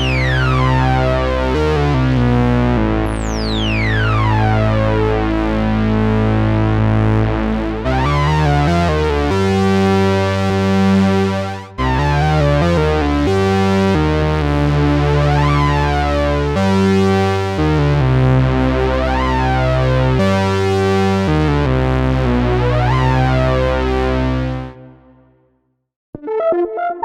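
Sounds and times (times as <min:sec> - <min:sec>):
synthesizer bass notes: 0:00.0 - 0:25.2
synthesizer rising and falling sweeps: 0:03.1 - 0:05.0.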